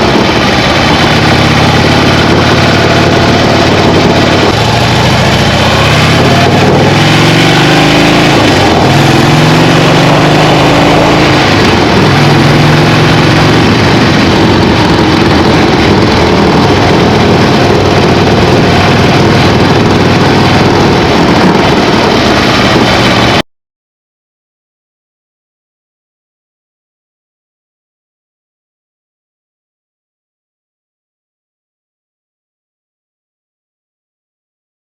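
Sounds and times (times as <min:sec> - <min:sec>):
motorcycle engine running loudly: 0:00.0 - 0:23.4
motorcycle rattling: 0:00.0 - 0:23.4.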